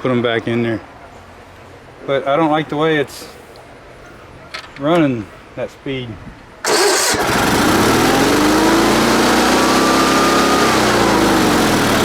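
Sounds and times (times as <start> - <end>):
garden tractor engine running: 6.6 - 12.0.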